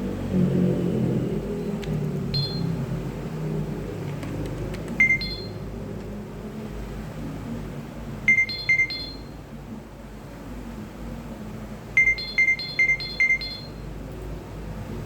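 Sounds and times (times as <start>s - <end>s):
phone ringtone beeping notes: 2.3s - 2.7s, 5.0s - 5.6s, 8.3s - 9.3s, 12.0s - 13.8s.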